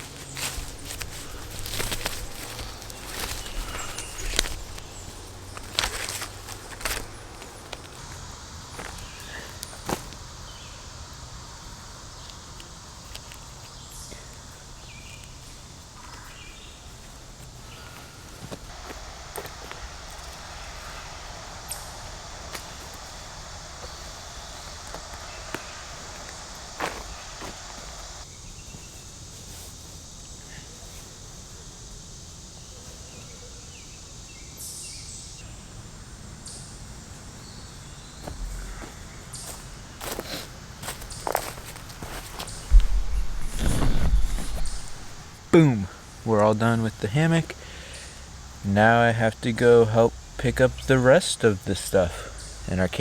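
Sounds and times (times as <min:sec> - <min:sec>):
faint bird chirps: 0:00.0 - 0:07.4
wind rumbling on microphone: 0:00.0 - 0:08.0, 0:41.4 - 0:45.6
low background noise: 0:00.0 - 0:53.0
short high hiss bursts: 0:18.7 - 0:28.2.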